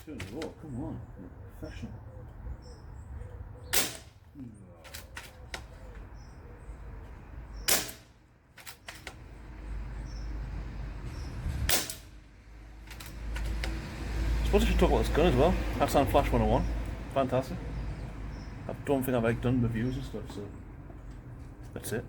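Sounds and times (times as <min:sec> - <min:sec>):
air rifle shots: 0:03.7 - 0:04.2, 0:07.6 - 0:09.2, 0:11.7 - 0:12.1
pellets striking metal targets: 0:03.8 - 0:04.2, 0:07.6 - 0:08.9, 0:11.7 - 0:12.2.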